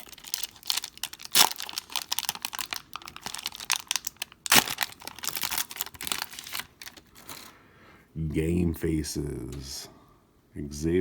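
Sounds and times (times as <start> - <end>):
wrapper crinkling and tearing: 0.0 - 7.5.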